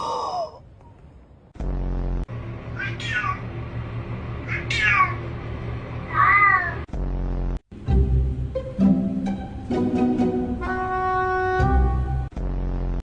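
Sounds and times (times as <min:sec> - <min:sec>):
steady low hum: 0:00.0 - 0:09.5, 0:12.2 - 0:13.0.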